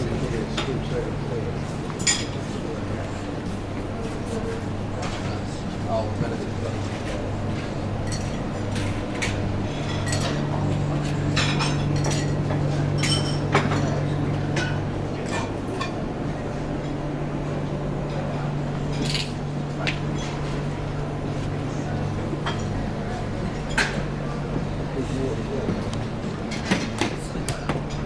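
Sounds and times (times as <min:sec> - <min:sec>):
steady low hum: 0:00.0 - 0:28.0
glassware and cutlery clinking: 0:02.0 - 0:02.4, 0:09.9 - 0:10.5, 0:11.3 - 0:14.0.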